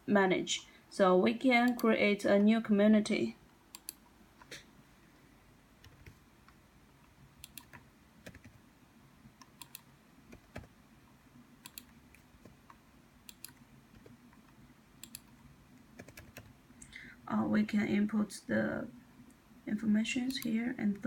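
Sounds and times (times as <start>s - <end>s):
low steady hum: 0.0s - 21.0s
keyboard and mouse clicks: 3.7s - 4.7s, 5.8s - 6.6s, 7.4s - 8.6s, 9.4s - 10.7s, 11.6s - 15.4s, 20.3s - 20.6s.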